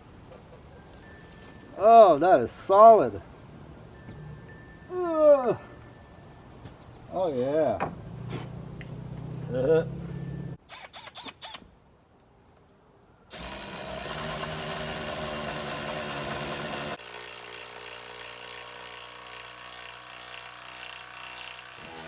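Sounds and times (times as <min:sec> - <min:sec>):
power drill on wood: 0:13.3 - 0:22.0.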